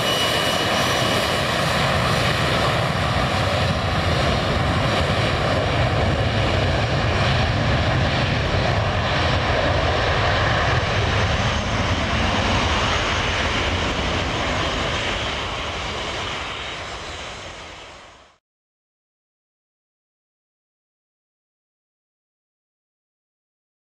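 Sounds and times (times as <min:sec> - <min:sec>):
jet engines roaring on take-off: 0:00.0 - 0:18.4.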